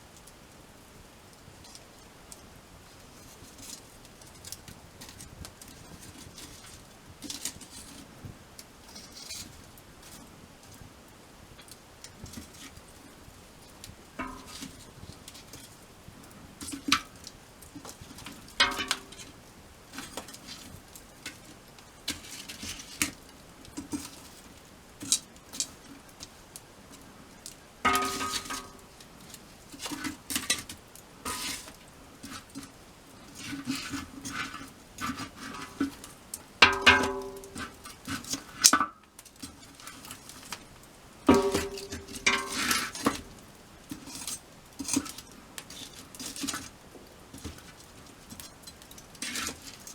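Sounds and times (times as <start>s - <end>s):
small knocks: 14.2s - 15.7s, 27.4s - 29.0s, 33.4s - 39.0s, 41.2s - 43.4s
rustling: 20.0s - 46.8s
metal gear clinking and clanking: 41.3s - 43.1s.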